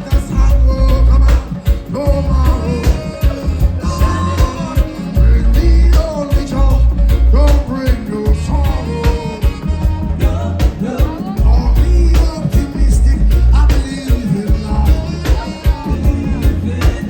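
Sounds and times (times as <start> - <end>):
person singing lead vocal: 0.0 - 17.0
reggae band playing: 0.0 - 17.0.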